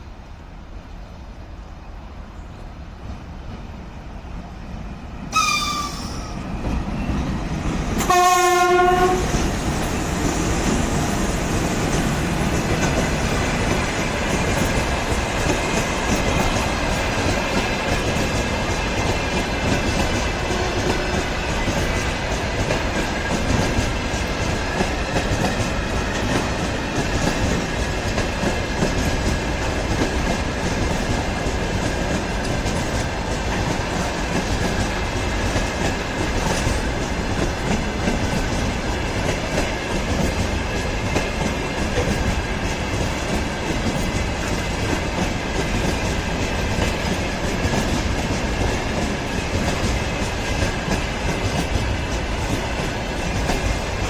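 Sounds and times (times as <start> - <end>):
train wheels clattering over rails: 5.7 - 54.0.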